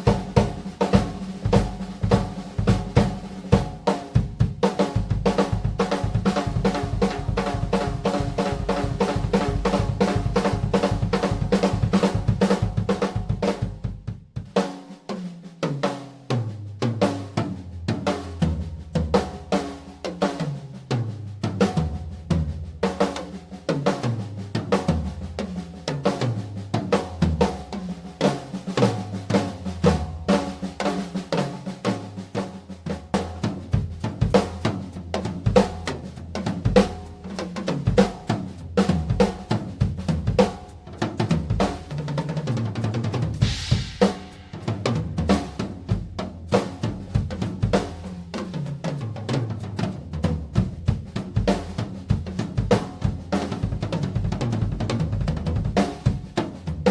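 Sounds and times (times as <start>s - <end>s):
drum kit grooves and fills: 0.0s - 56.9s
cymbal crash: 43.4s - 44.8s.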